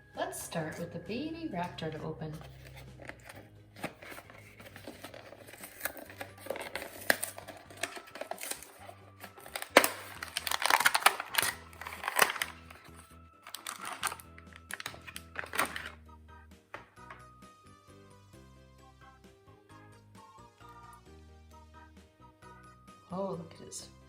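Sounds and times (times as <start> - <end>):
quiet background music: 0.0 - 24.0
packaging tearing and crinkling: 2.4 - 16.0.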